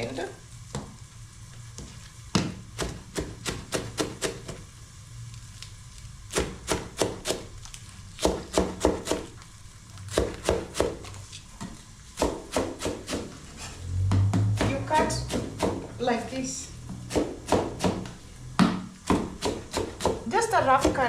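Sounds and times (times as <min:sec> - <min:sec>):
knife chopping on a board: 0:02.4 - 0:04.6, 0:06.3 - 0:07.5, 0:08.2 - 0:09.3, 0:10.1 - 0:11.1, 0:12.2 - 0:13.4, 0:14.1 - 0:15.9, 0:17.1 - 0:21.0.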